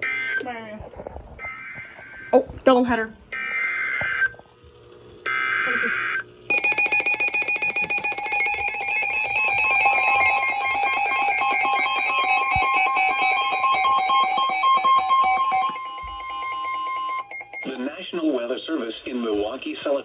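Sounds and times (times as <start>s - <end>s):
fast pulsing electronic alarm: 5.3s - 17.8s
steady warning tone: 5.4s - 17.8s.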